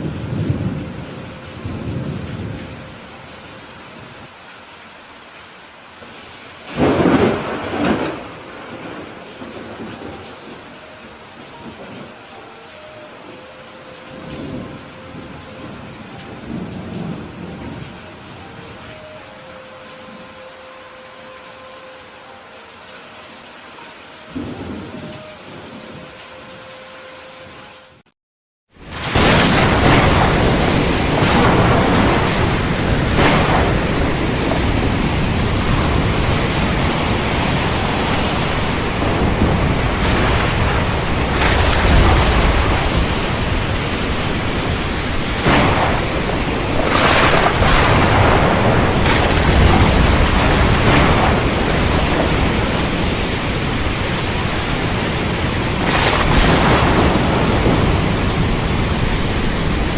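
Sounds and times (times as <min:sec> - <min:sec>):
thunder rumbling: 0:00.0 - 0:03.2, 0:06.7 - 0:12.3, 0:14.1 - 0:19.1, 0:28.8 - 0:59.9
heavy rain: 0:00.0 - 0:28.1, 0:28.7 - 0:59.9.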